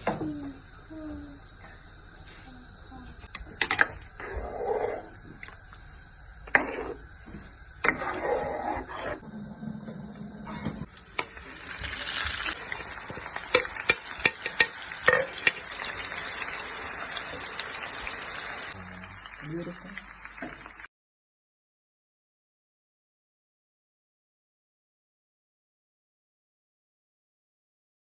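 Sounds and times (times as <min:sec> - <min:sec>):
food sizzling in a pan: 0:10.6 - 0:20.9
utensil clicking against pan: 0:13.5 - 0:15.6.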